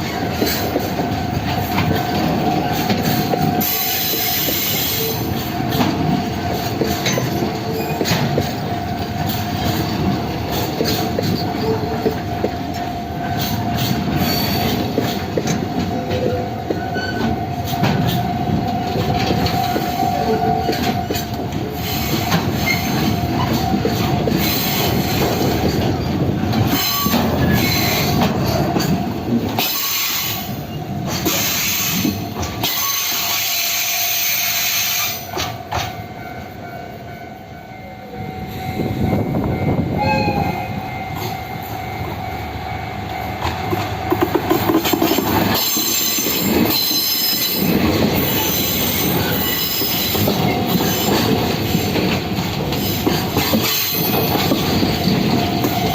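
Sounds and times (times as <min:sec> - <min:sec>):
train wheels clacking over rails: 0:00.0 - 0:36.6, 0:42.9 - 0:55.9
wheels squealing: 0:18.9 - 0:28.9.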